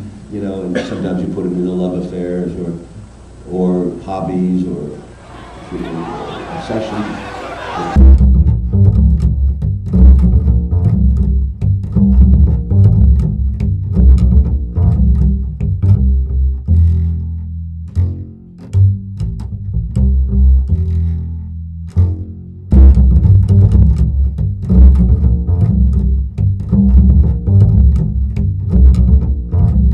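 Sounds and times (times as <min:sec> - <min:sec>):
bowed strings: 0:07.7 - 0:29.9
plucked double bass: 0:08.0 - 0:29.9.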